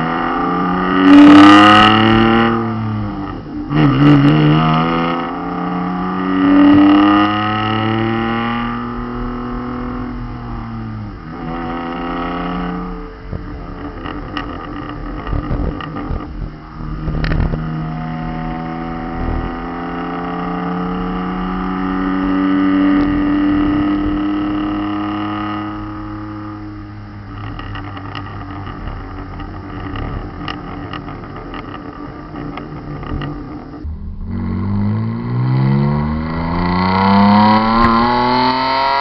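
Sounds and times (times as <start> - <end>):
car engine revving: 0.0 - 39.0
exhaust pops and crackles: 6.4 - 19.8, 22.9 - 24.8, 25.4 - 35.3, 35.9 - 38.7.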